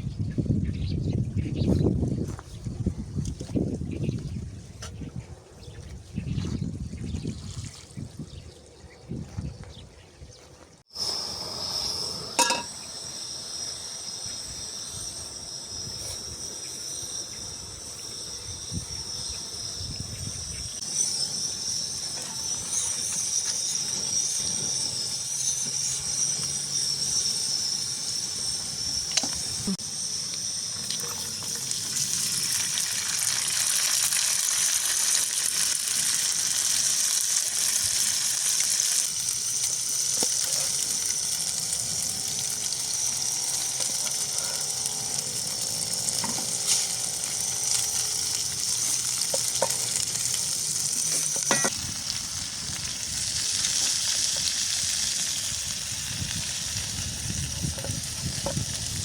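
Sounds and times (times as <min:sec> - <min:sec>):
high-pitched buzz: 0:10.9 - 0:34.2, 0:35.7 - 0:59.0.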